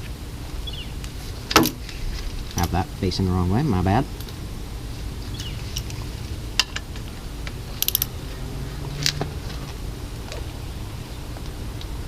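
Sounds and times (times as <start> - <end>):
socket wrench ratchet clicking: 7.8 - 8.1.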